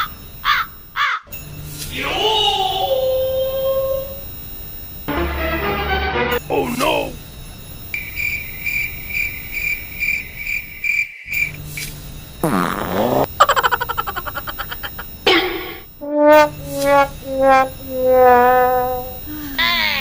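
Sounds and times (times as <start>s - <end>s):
sad trombone: 16.0s - 19.2s.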